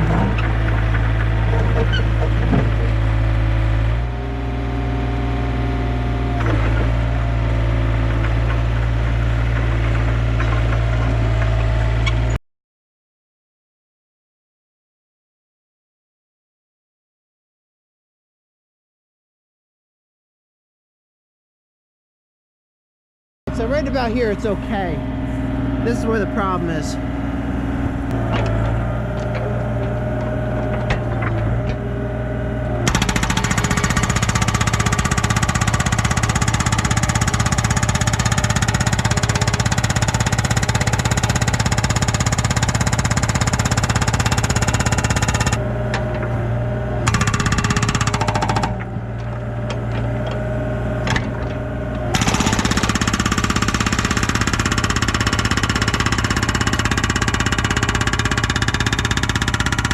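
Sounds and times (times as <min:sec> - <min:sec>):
hydraulic breaker pounding rock: 0:00.0 - 0:03.3, 0:28.1 - 0:32.0, 0:32.7 - 0:46.4, 0:47.0 - 0:59.9
diesel engine running: 0:00.0 - 0:12.4, 0:23.5 - 0:59.9.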